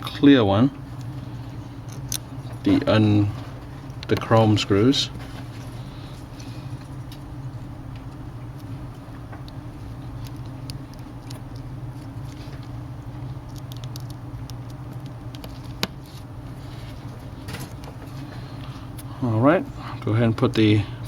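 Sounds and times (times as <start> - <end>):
steady low hum: 0.0 - 21.0
screwdriver ticks and scratches: 10.1 - 16.3.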